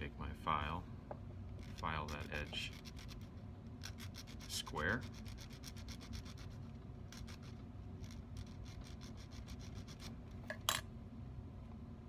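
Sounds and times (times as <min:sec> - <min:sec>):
hand file rasping on metal wire: 0:01.5 - 0:10.2.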